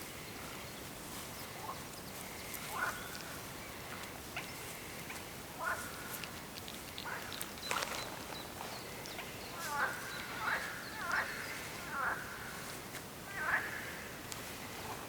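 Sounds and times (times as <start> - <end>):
faint outdoor hiss: 0.0 - 15.0.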